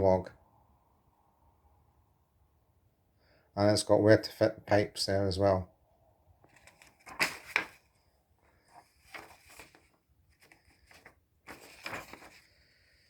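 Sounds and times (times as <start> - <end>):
paper rustling: 6.5 - 13.0.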